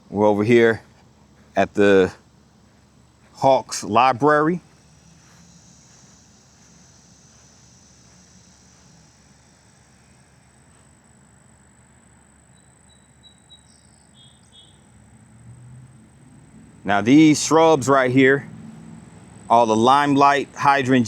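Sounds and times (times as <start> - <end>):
high-pitched insect drone: 3.3 - 17.3
short bird chirps: 12.5 - 14.9.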